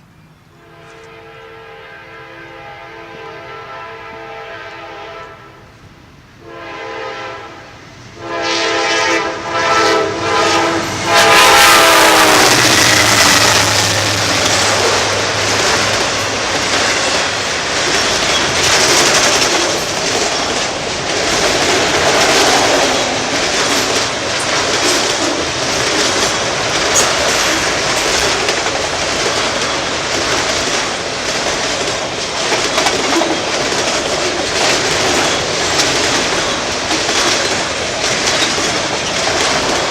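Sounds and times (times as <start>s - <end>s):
train wheels rumbling on rail: 0.0s - 39.9s
locomotive horn blasts: 0.5s - 5.7s, 6.4s - 15.2s.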